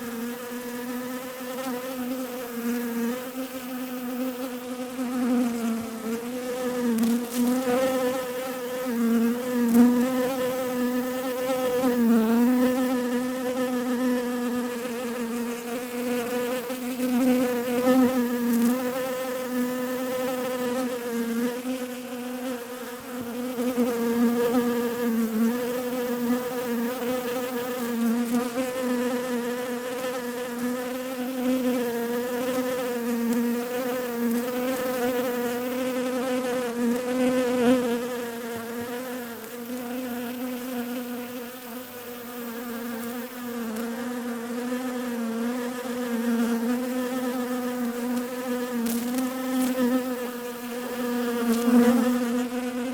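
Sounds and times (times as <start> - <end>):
bees buzzing: 0.0 - 52.9.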